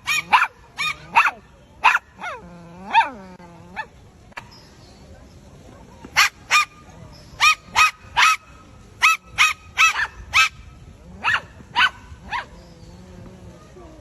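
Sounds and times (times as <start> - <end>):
high-pitched dog barks: 0.0 - 3.2, 7.4 - 10.6, 11.2 - 12.5.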